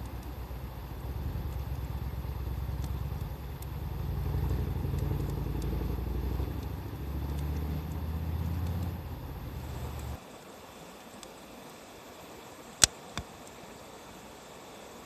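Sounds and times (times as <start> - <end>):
low rumble: 0.0 - 10.2
wood fire crackling and popping: 0.0 - 10.2.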